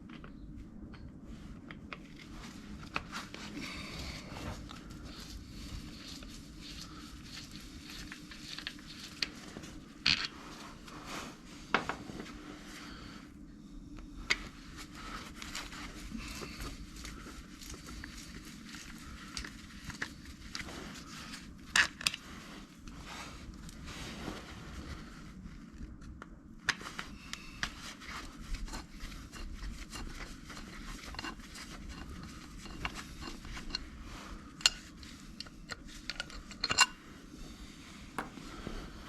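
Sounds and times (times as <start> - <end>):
handling noise: 38.2 - 38.8.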